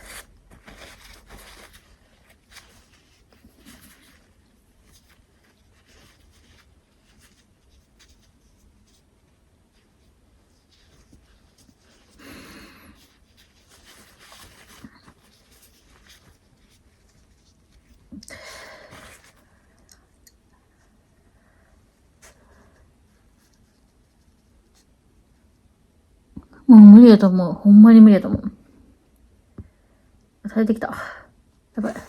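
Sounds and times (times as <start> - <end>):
scratchy paper rustling: 0.0 - 18.1.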